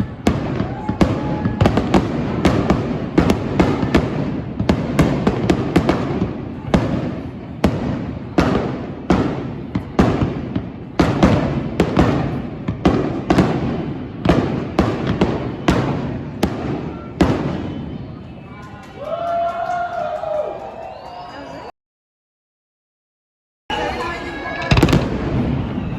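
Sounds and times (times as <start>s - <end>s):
fireworks bursting with rumbling echo: 0.0s - 18.5s, 23.7s - 25.9s.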